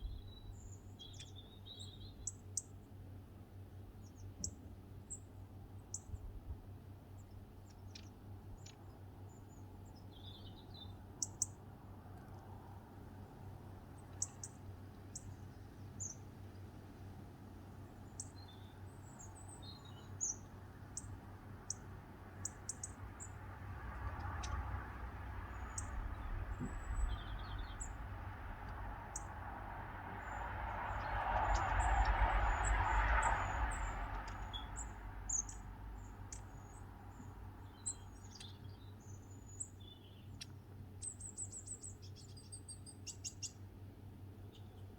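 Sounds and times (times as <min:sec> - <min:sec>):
small birds chirping: 0:00.0 - 0:03.0, 0:03.8 - 0:06.4, 0:07.1 - 0:12.5, 0:13.2 - 0:43.7
broad rushing noise: 0:23.6 - 0:36.3.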